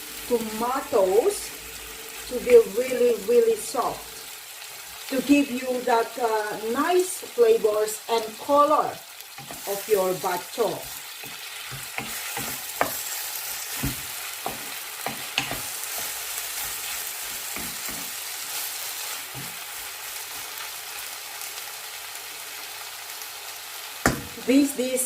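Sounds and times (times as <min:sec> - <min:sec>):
food sizzling in a frying pan: 0:00.0 - 0:25.0
utensil knocking and scraping pan: 0:10.8 - 0:16.1.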